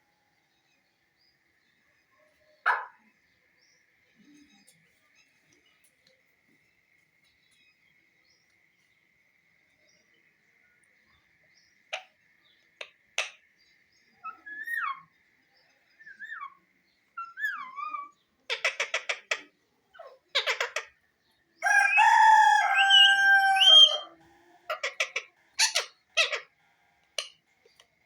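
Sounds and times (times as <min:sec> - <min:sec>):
parrot calling: 0:17.2 - 0:20.9, 0:21.6 - 0:26.5.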